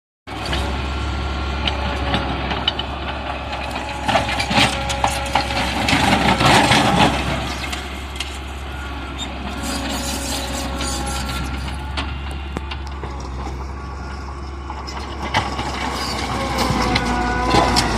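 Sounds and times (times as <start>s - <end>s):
heavy machine engine running: 0.3s - 17.9s
concrete breaking and scraping: 3.6s - 8.4s.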